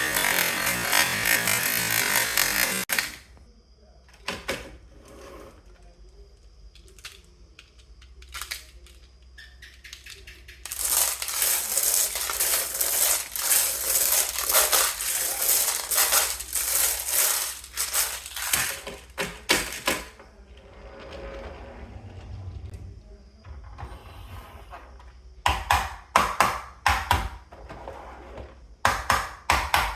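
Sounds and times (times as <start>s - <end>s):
marbles clattering down wooden track: 10.6s - 20.1s.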